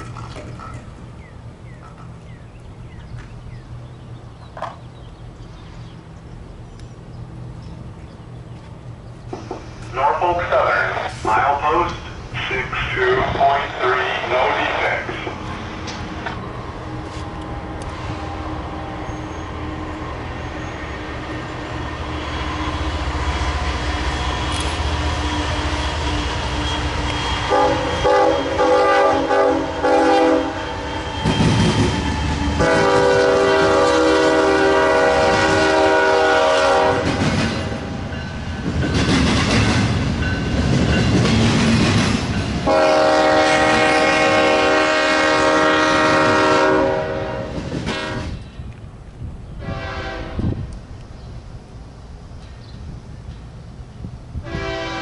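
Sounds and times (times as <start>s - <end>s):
train engine rumble: 0.0s - 55.0s
train rolling by: 0.0s - 55.0s
train horn blasts: 24.8s - 37.9s, 42.6s - 48.4s, 49.6s - 50.6s, 54.4s - 55.0s.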